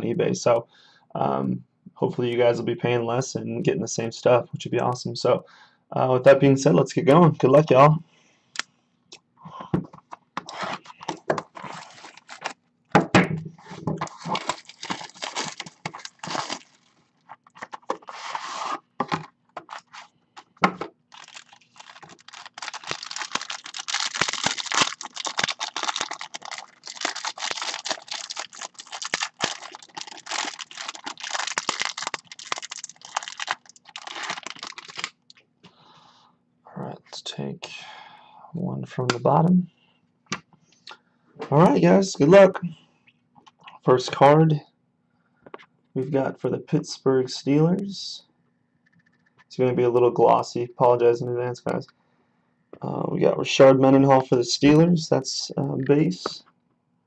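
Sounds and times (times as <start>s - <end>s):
plastic wrapping crinkling: 10.8s - 12.6s, 14.0s - 18.7s, 19.6s - 20.5s, 21.1s - 35.3s.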